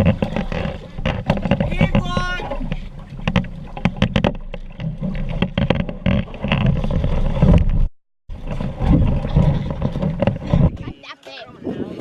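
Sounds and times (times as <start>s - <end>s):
knocks and clatters: 0.0s - 11.0s
wind buffeting microphone: 6.9s - 12.0s.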